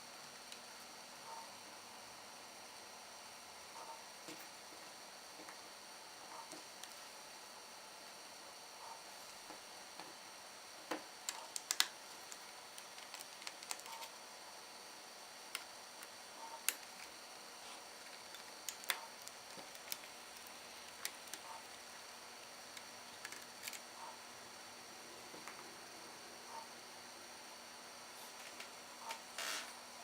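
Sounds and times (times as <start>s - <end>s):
small clicks and taps on laptop parts: 10.9s - 14.1s.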